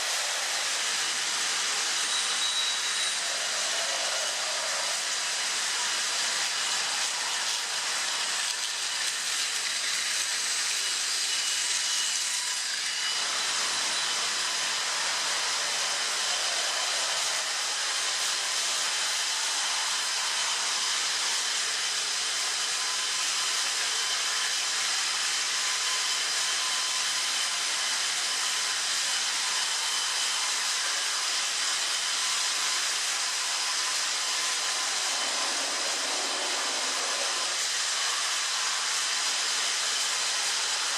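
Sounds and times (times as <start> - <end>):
toy train motors whirring: 0.0 - 40.9
toy train wheels rolling: 6.5 - 12.4.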